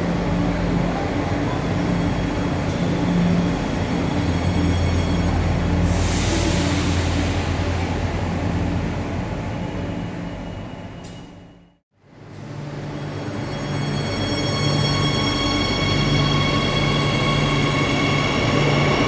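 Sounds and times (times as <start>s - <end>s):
electric train humming: 12.6s - 19.0s.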